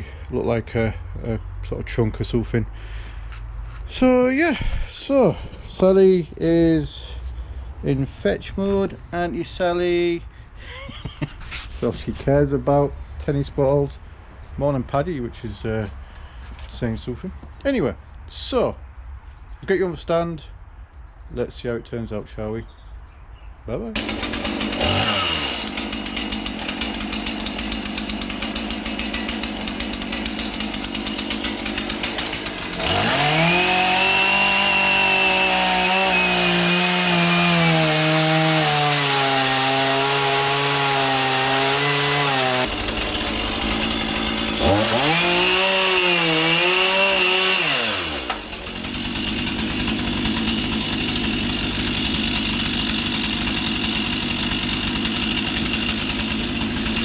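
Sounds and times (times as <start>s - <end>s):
chainsaw cutting log: 24.0s - 57.0s.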